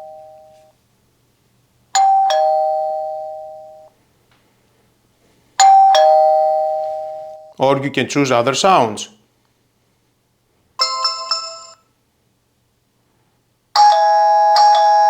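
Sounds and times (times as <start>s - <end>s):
electronic ding-dong doorbell: 0.0s - 0.7s, 2.0s - 3.9s, 5.6s - 7.6s, 10.8s - 11.8s, 13.8s - 15.0s.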